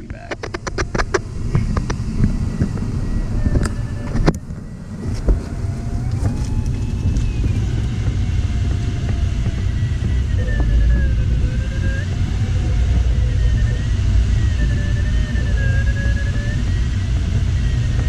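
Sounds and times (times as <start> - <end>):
electronic variometer tone: 0.0 - 18.0
wind noise over cockpit: 0.0 - 18.0
sharp clicks: 0.1 - 2.0.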